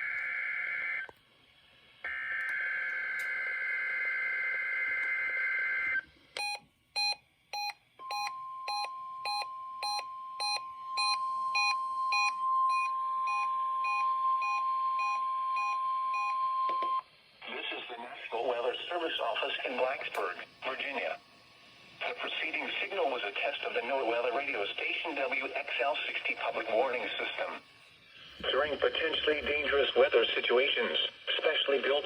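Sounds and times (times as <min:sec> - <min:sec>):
steady warning alarm tone: 0:22.0 - 0:27.9.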